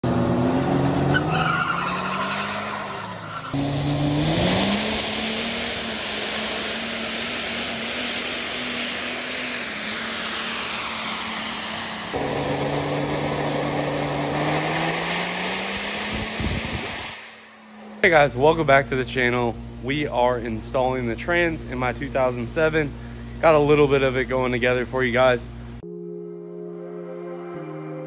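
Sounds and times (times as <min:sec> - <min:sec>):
tire squeal: 0:00.0 - 0:18.0
engine revving: 0:00.0 - 0:18.3.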